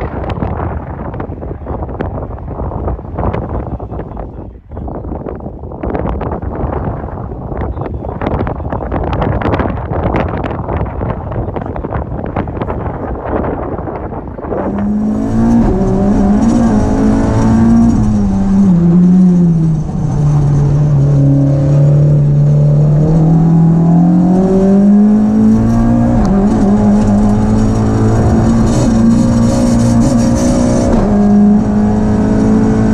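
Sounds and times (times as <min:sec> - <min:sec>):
car engine running hard: 0:14.4 - 0:32.9.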